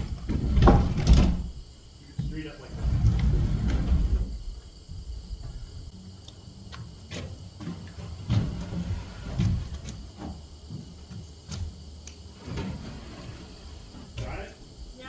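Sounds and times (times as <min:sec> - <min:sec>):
wooden beam knocks and bumps: 0:00.0 - 0:01.6, 0:02.2 - 0:05.8.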